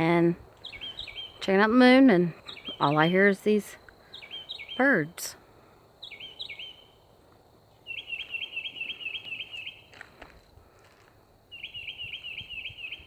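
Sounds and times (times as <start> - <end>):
bird chirping: 0.6 - 5.3, 6.0 - 7.1, 7.7 - 9.9, 11.5 - 13.0.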